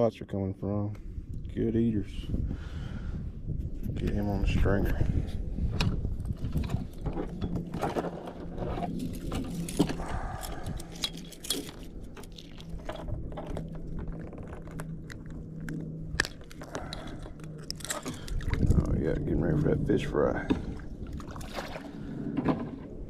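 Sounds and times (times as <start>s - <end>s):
fish stringer clinks and rattles: 6.3s - 18.9s.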